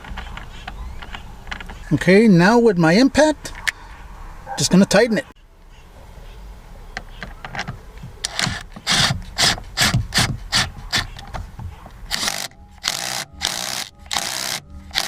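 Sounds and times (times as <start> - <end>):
impact wrench bursts: 12.1 - 15.0.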